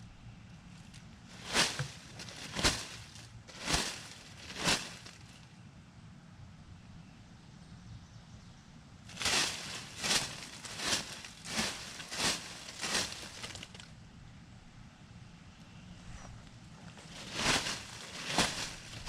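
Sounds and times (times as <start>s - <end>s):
low steady rumble: 0.0s - 19.0s
footsteps crunching dry leaves: 1.3s - 5.4s, 9.1s - 13.9s, 16.8s - 19.0s.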